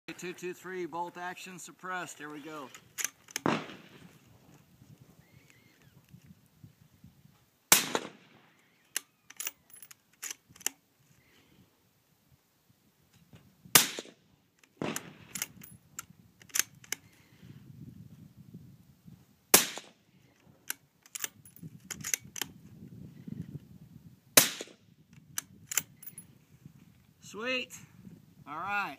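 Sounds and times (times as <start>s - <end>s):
rifle bolt clicking: 2.7s - 3.6s, 8.9s - 10.8s, 14.6s - 17.0s, 20.7s - 22.5s, 24.6s - 26.0s
suppressed rifle shots: 3.0s - 4.1s, 7.7s - 8.5s, 13.8s - 15.6s, 19.5s - 20.0s, 24.4s - 24.8s.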